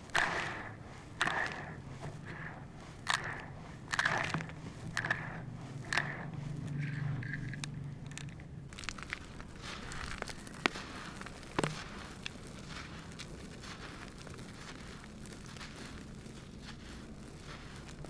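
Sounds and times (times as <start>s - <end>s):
cement pieces crunching: 8.1s - 18.0s.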